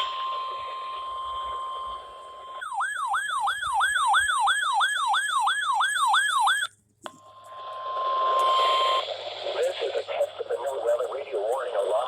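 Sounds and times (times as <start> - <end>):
steady warning alarm tone: 0.0 - 12.0
radio hiss: 7.4 - 12.0.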